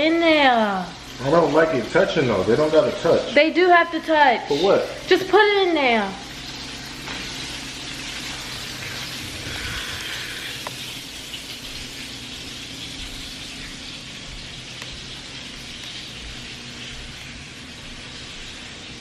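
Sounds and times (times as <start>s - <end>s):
chicken sizzling in hot oil: 0.0s - 19.0s.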